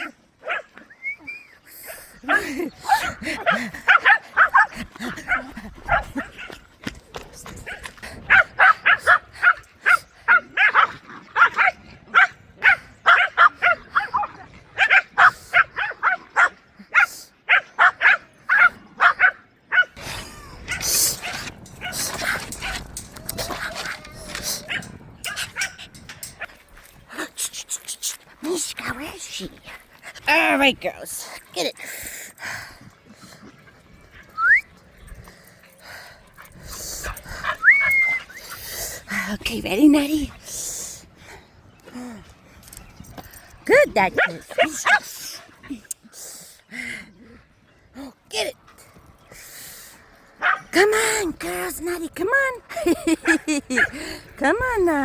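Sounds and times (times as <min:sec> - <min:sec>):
dog barking: 0:00.4 - 0:00.7, 0:02.3 - 0:04.7, 0:08.3 - 0:19.9, 0:50.4 - 0:50.6.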